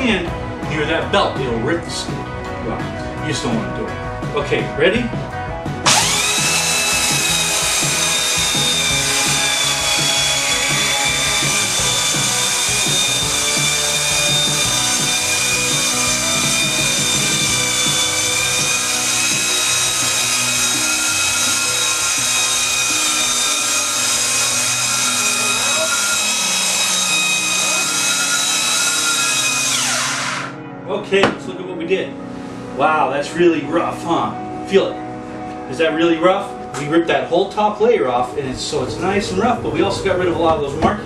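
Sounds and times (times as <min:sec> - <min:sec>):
belt sander sanding wood: 0:05.9 - 0:30.6.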